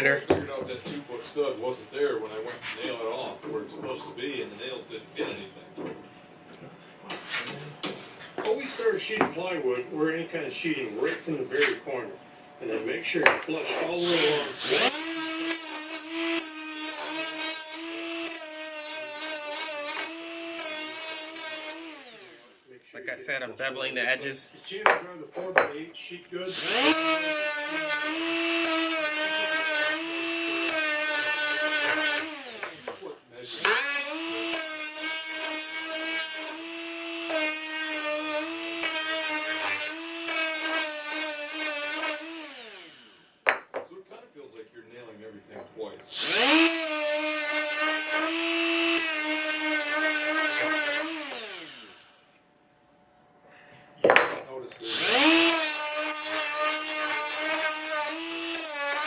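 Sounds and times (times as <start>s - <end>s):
electric grinder whining: 13.9s - 22.6s, 26.5s - 43.3s, 46.1s - 52.2s, 54.8s - 59.0s.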